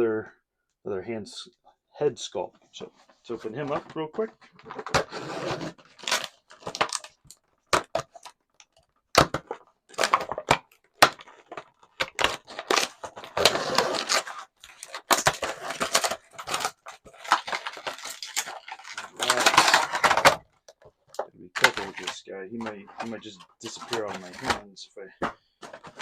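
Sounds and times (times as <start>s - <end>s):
packaging rustling: 3.6s - 24.6s, 25.2s - 26.0s
plastic and card clicking: 14.2s - 24.6s.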